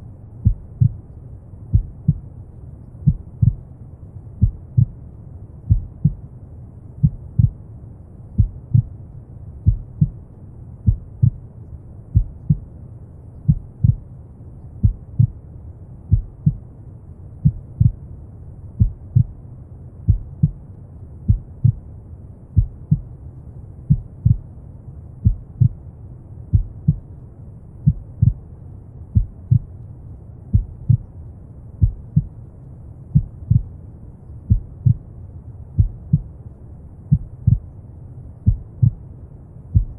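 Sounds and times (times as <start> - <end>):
heartbeat thumps: 0.4 - 1.0, 1.7 - 2.2, 3.0 - 3.6, 4.4 - 5.0, 5.7 - 6.2, 7.0 - 7.6, 8.4 - 9.0, 9.6 - 10.2, 10.8 - 11.4, 12.1 - 12.6, 13.5 - 14.0, 14.8 - 15.4, 16.1 - 16.6, 17.4 - 18.0, 18.8 - 19.3, 20.1 - 20.6, 21.3 - 21.8, 22.6 - 23.1, 23.9 - 24.5, 25.2 - 25.8, 26.5 - 27.1, 27.8 - 28.4, 29.2 - 29.7, 30.5 - 31.1, 31.8 - 32.4, 33.1 - 33.7, 34.5 - 35.0, 35.8 - 36.3, 37.1 - 37.7, 38.4 - 39.0.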